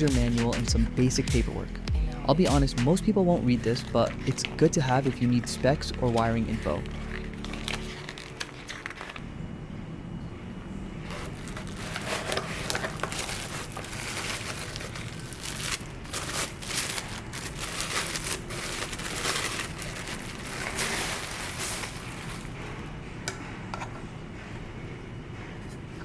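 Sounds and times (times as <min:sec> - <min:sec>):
packaging crinkling and rustling: 0:03.4 - 0:09.3, 0:11.0 - 0:23.0.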